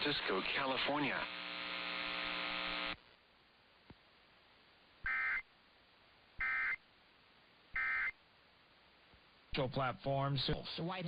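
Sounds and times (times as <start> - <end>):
buzzing hum: 1.2 - 3.2.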